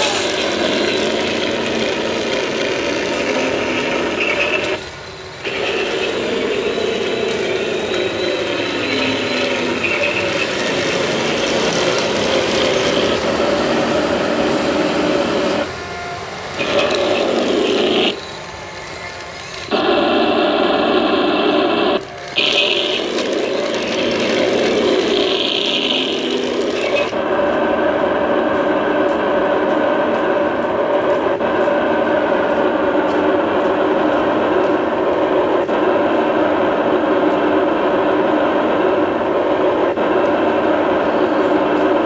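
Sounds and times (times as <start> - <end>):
toy tank engine sound effect: 0.0 - 15.7, 16.6 - 18.4, 19.0 - 42.0
drive motor and gear noise: 0.0 - 42.0.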